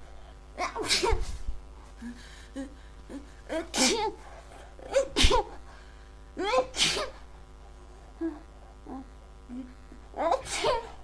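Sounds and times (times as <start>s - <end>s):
woman sneezing: 0.6s - 1.4s, 3.5s - 4.2s, 4.9s - 5.6s, 6.4s - 7.2s, 10.2s - 11.0s
breathing between sneezes: 6.7s - 7.2s, 10.4s - 11.0s.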